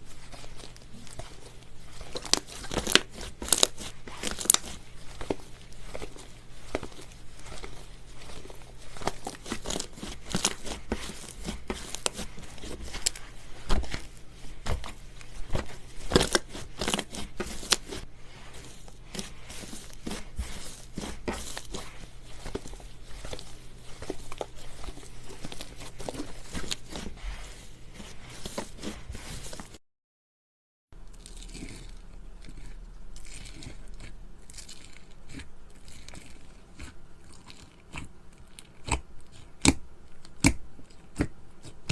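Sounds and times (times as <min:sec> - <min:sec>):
crunchy slime crackling: 0:00.0 - 0:14.2, 0:31.0 - 0:41.9
slime squishing: 0:00.0 - 0:29.6, 0:31.0 - 0:41.9.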